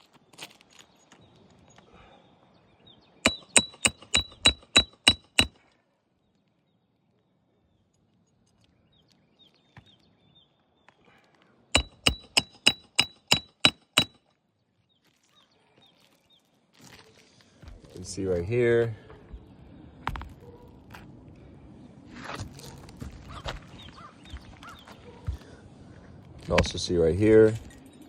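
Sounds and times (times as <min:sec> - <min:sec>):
hammer striking nails: 0:03.3 - 0:05.6, 0:11.8 - 0:14.2.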